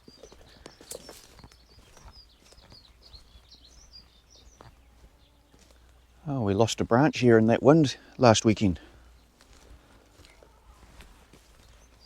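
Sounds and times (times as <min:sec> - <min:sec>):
footsteps on ground: 0:00.0 - 0:06.2, 0:08.6 - 0:12.0
small birds chirping: 0:00.0 - 0:12.0.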